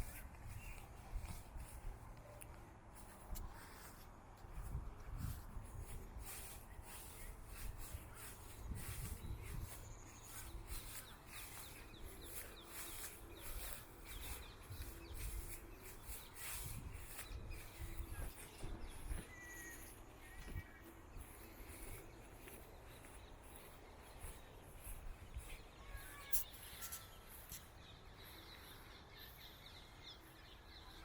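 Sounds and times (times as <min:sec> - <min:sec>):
bird chirps: 0:06.2 - 0:31.0.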